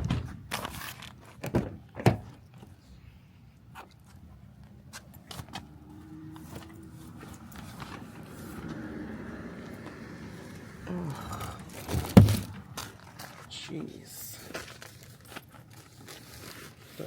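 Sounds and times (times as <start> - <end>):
knocks and clunks: 0.0 - 0.7, 1.4 - 2.4, 11.4 - 13.0.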